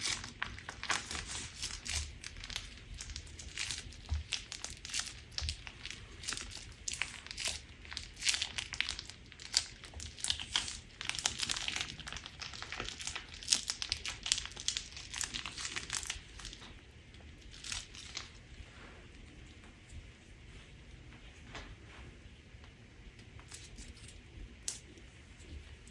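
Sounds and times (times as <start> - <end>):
slime crackling and crunching: 0.0 - 18.5.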